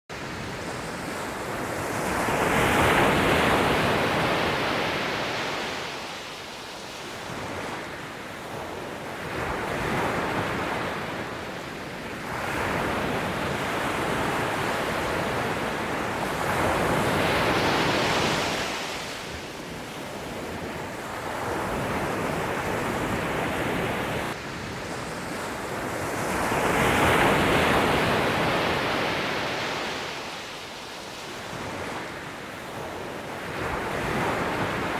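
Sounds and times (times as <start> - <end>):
ocean waves breaking: 12.2 - 34.9.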